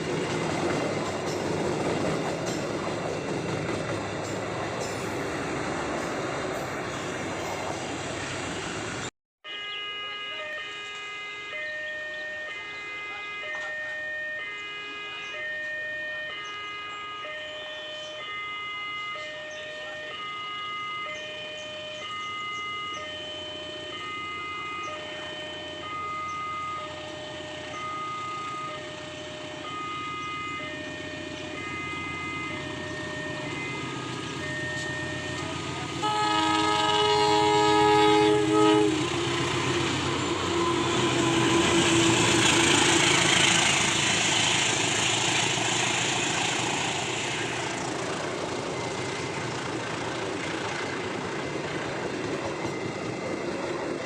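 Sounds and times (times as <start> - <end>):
train wheels rumbling on rails: 0.0 - 9.1, 24.7 - 54.0
locomotive chord horn: 9.4 - 45.3
level crossing alarm: 9.4 - 54.0.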